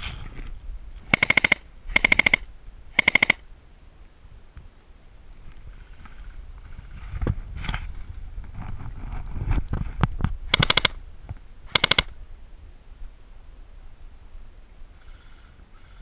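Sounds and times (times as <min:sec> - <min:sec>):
airsoft gun full-auto bursts: 0:01.1 - 0:03.4, 0:10.5 - 0:11.0, 0:11.7 - 0:12.1.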